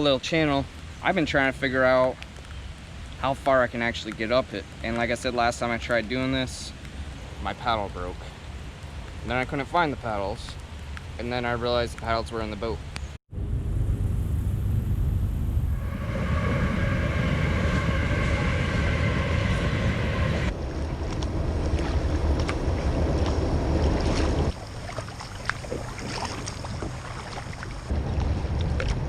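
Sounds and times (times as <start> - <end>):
wind rumble on microphone: 12.9 - 29.0
steady multi-tone hum: 13.3 - 26.0
water splashes: 15.8 - 29.0.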